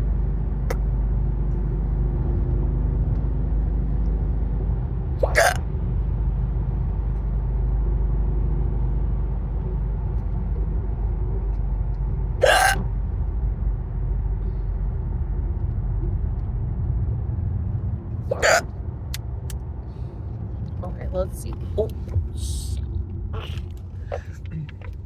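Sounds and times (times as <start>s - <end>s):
car road noise rumble: 0.0s - 25.0s
person hiccuping: 5.2s - 5.6s, 12.4s - 12.8s, 18.3s - 18.6s, 23.4s - 24.8s.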